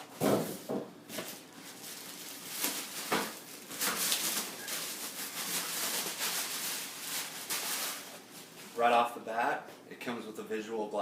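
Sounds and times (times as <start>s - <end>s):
rustling packaging: 1.1s - 9.1s.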